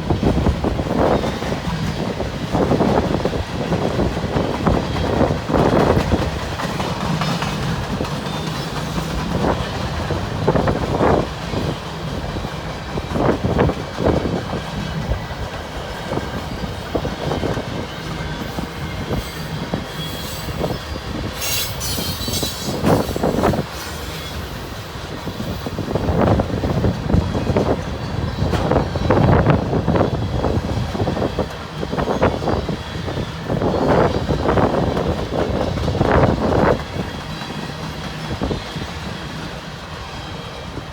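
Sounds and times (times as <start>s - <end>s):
train rumbling past: 0.0s - 40.9s
wheels clacking over rail: 0.2s - 19.5s
high wheel squeal: 16.2s - 26.2s.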